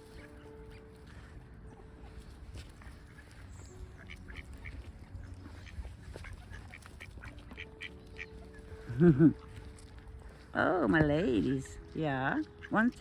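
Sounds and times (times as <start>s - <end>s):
ducks quacking: 2.0s - 9.6s, 12.3s - 13.0s.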